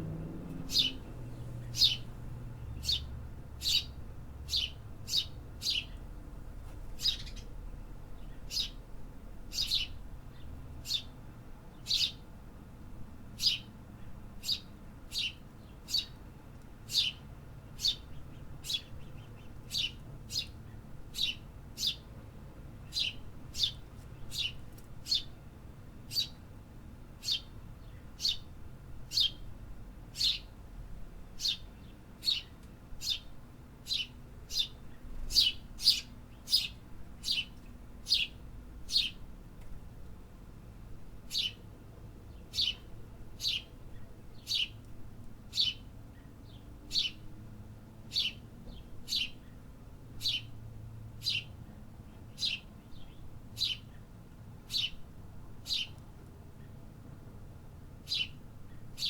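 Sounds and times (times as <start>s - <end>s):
faint low rumble: 0.0s - 3.7s
small bird chirping: 0.6s - 6.0s, 7.0s - 7.6s, 8.2s - 8.8s, 9.5s - 11.2s, 11.8s - 12.2s, 13.4s - 16.2s, 16.8s - 17.2s, 17.8s - 22.1s, 22.8s - 25.4s, 26.1s - 26.4s, 27.2s - 28.5s, 29.1s - 29.5s, 30.2s - 30.6s, 31.4s - 39.2s, 41.3s - 41.6s, 42.4s - 44.8s, 45.5s - 47.3s, 48.1s - 49.6s, 50.2s - 50.6s, 51.2s - 51.5s, 52.1s - 54.0s, 54.7s - 55.0s, 55.6s - 56.0s, 58.0s - 59.0s.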